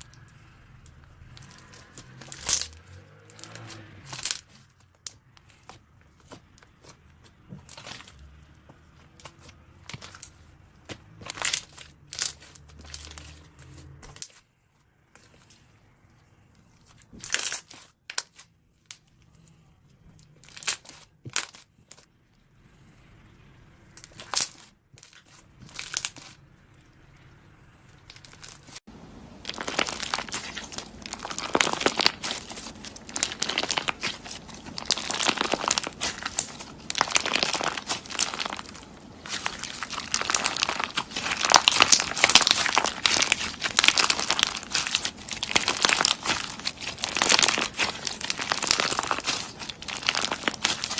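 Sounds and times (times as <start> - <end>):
slime crackling and popping: 0.9 - 6.9, 7.5 - 8.2, 9.2 - 14.4, 17.0 - 19.0, 20.3 - 21.7, 24.0 - 26.4, 28.0 - 50.9.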